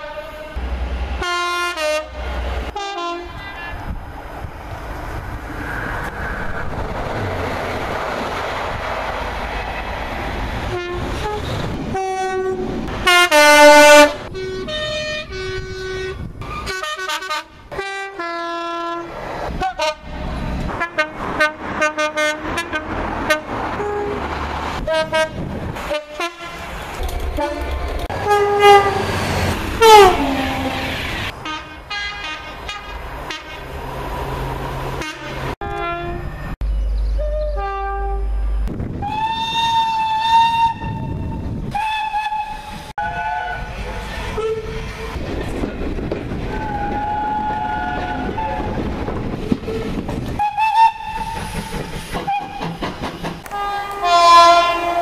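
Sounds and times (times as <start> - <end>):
train horn blasts: 0.0 - 0.6, 1.2 - 3.9, 10.7 - 24.2, 24.8 - 26.7, 27.4 - 29.1, 29.8 - 33.7, 35.0 - 36.5, 37.2 - 45.2, 46.5 - 48.8, 53.4 - 55.0
train running noise: 0.0 - 55.0.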